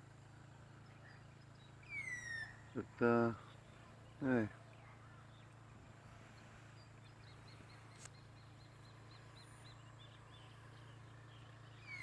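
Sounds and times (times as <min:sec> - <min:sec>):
bird chirping: 0:00.4 - 0:12.0
faint click: 0:07.9 - 0:08.2.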